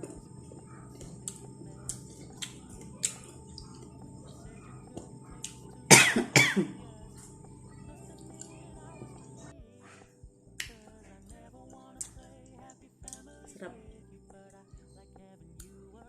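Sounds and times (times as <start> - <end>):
woman chewing: 0.0 - 9.5
mouth clicks and smacks: 0.9 - 4.0
woman coughing: 5.9 - 6.9.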